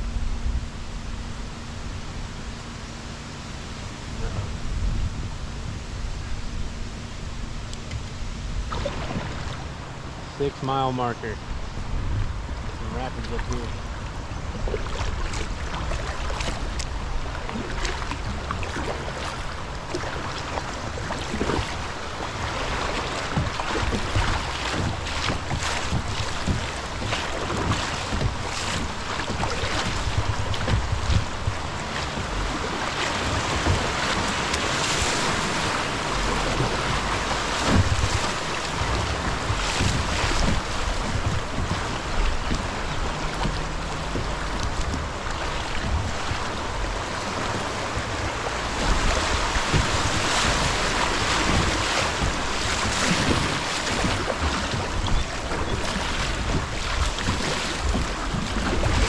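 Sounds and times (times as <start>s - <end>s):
river water rushing in rapids: 0.0s - 59.0s
wind on microphone: 3.7s - 9.7s, 11.2s - 59.0s
knocks and thumps: 23.3s - 32.4s, 35.3s - 45.1s.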